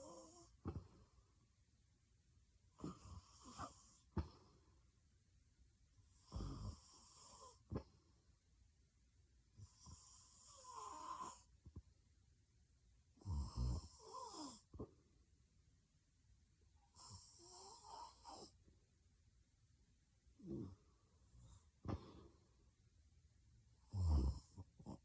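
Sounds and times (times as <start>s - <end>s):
woman snoring: 0.0s - 0.5s, 6.2s - 7.6s, 9.7s - 11.5s, 13.2s - 14.7s, 17.0s - 18.6s, 23.9s - 25.0s.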